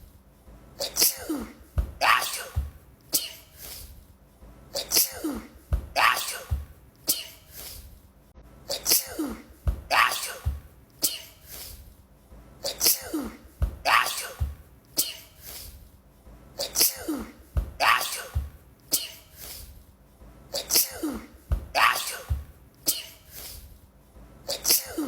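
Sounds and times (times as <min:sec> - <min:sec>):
woman sneezing: 0:00.8 - 0:04.0, 0:04.8 - 0:07.9, 0:08.7 - 0:11.9, 0:12.6 - 0:15.8, 0:16.6 - 0:19.7, 0:20.5 - 0:23.7, 0:24.5 - 0:25.0.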